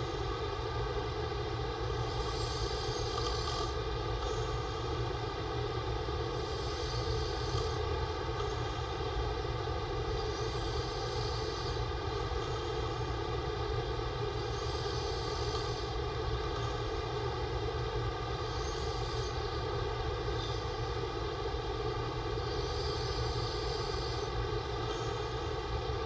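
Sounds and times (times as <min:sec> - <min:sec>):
steady machine drone: 0:00.0 - 0:26.0
man breathing in sleep: 0:01.8 - 0:09.4, 0:10.0 - 0:13.4, 0:14.2 - 0:17.2, 0:22.3 - 0:25.7.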